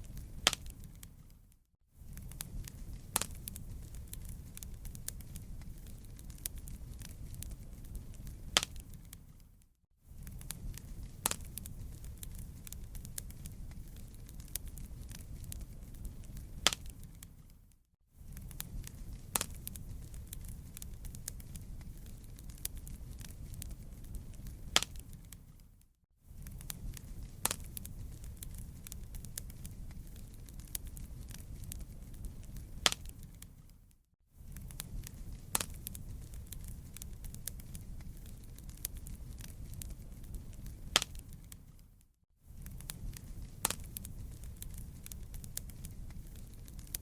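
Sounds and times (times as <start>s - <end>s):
campfire crackling: 0.0s - 47.0s.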